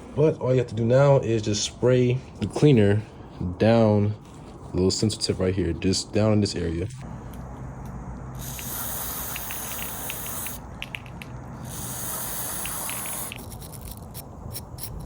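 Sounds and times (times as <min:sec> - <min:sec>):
aerosol can spraying: 0:08.4 - 0:11.0, 0:11.6 - 0:14.2.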